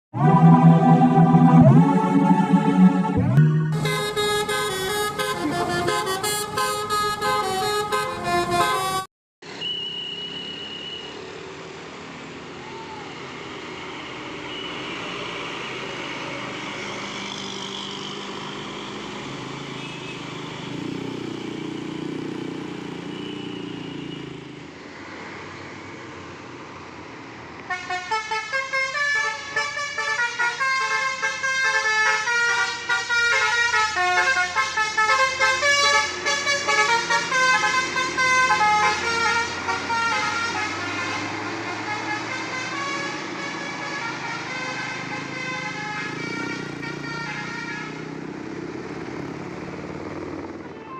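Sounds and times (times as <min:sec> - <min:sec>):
vehicle and road noise: 0:00.1 - 0:50.9
music: 0:00.2 - 0:06.2
bus horn playing melody: 0:00.2 - 0:09.1, 0:27.7 - 0:48.1.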